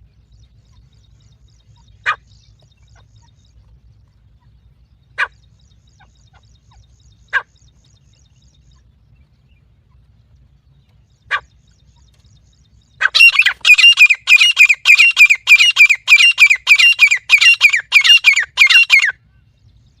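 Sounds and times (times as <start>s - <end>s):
francolin calls: 0.1s - 19.5s.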